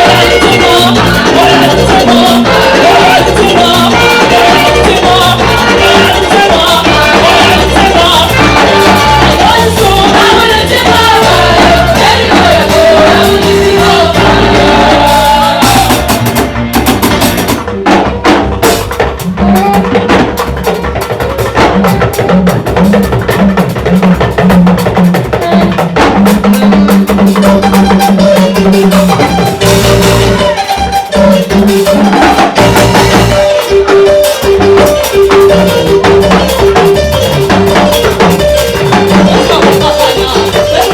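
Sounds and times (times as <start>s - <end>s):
person singing: 0.0s - 16.6s, 19.4s - 20.4s, 25.4s - 27.4s, 39.1s - 40.9s
bass and drums: 0.0s - 40.9s.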